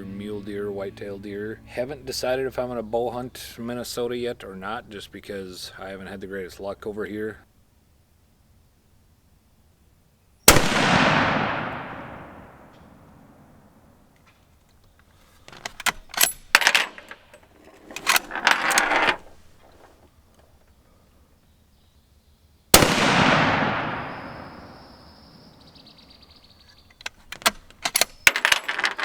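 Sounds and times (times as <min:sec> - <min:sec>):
rifle shot echoing: 0:10.5 - 0:13.8, 0:22.8 - 0:25.9
metallic clicking and clatter: 0:15.5 - 0:20.1, 0:27.0 - 0:29.0.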